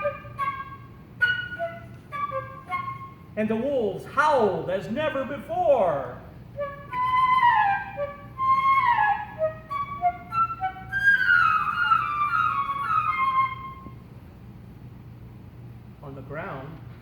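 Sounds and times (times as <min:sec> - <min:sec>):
solo flute sliding phrases: 0:00.0 - 0:03.4, 0:06.5 - 0:14.0.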